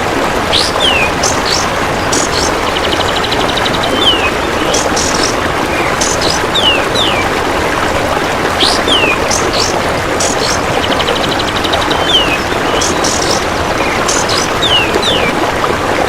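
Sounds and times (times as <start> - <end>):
running water: 0.0 - 16.0.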